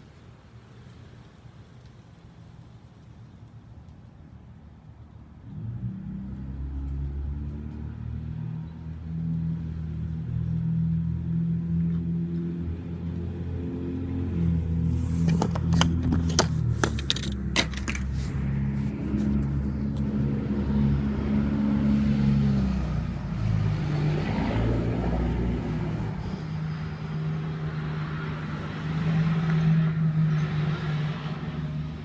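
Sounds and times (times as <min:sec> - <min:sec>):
vehicle engine humming: 0:00.0 - 0:32.0
car passing: 0:05.4 - 0:32.0
sharp clicks and rattles: 0:15.2 - 0:18.2.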